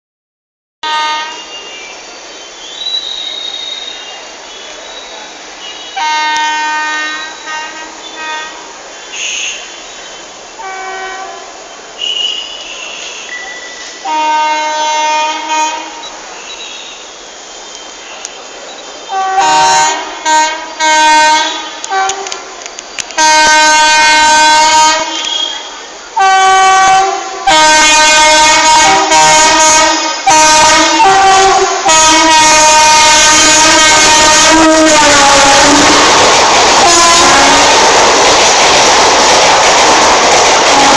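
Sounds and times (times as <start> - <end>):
locomotive horn honking: 0.8 - 1.8, 5.6 - 9.9, 10.6 - 17.0, 19.1 - 36.0, 36.8 - 37.8, 40.7 - 40.9
running train noise: 0.8 - 40.9.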